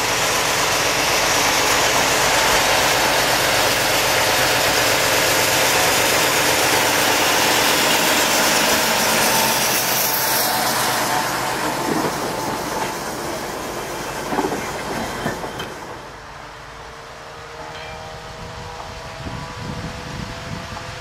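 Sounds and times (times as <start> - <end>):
train running on rails: 0.0 - 21.0
wheel clacks over rail joints: 14.1 - 16.1.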